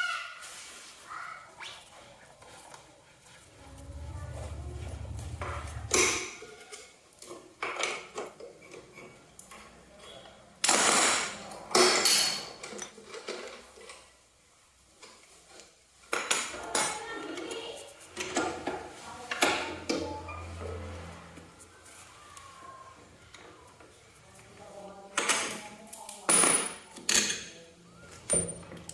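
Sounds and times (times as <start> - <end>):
metal scraping: 3.4 - 6.7
low steady hum: 3.5 - 6.5.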